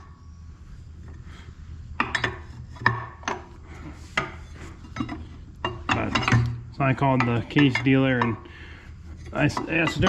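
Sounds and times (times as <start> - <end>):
wrenches scraping on steel: 2.0 - 10.0
metal parts clinking: 4.2 - 6.6.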